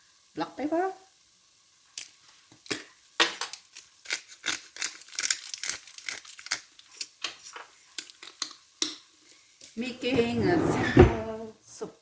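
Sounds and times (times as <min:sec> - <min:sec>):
pepper crinkling crackles: 0:02.0 - 0:08.6.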